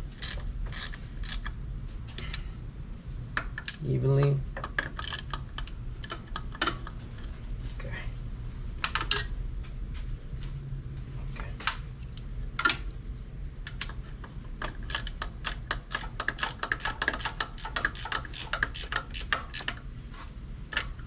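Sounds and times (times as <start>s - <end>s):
ratchet wrench clicking: 0.1s - 1.5s, 4.9s - 6.2s, 14.9s - 19.8s.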